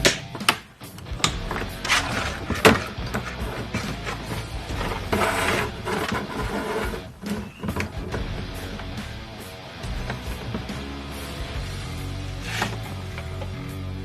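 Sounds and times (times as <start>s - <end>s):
sharp clicks and knocks: 0.0s - 5.2s
background music: 0.0s - 14.0s.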